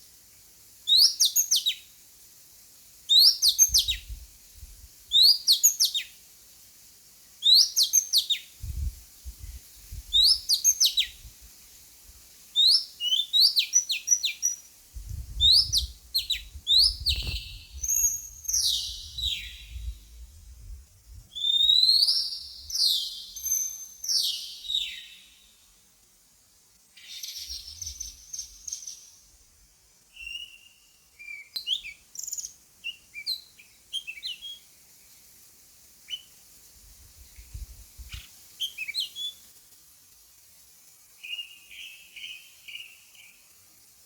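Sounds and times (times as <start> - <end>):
bird chirping calls: 15.4 - 20.0.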